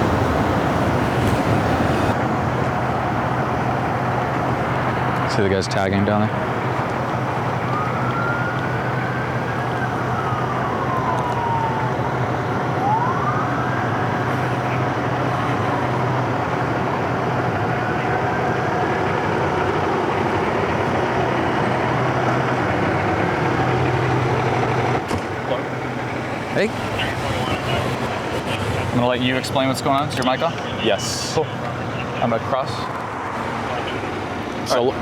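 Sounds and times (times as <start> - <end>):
low engine rumble: 0.0 - 35.0
street traffic: 0.0 - 35.0
siren wailing: 6.3 - 35.0.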